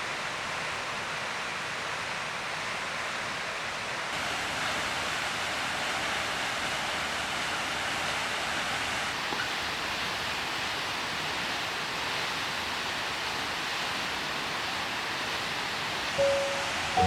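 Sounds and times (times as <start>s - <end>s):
waterfall rushing: 15.0s - 17.0s.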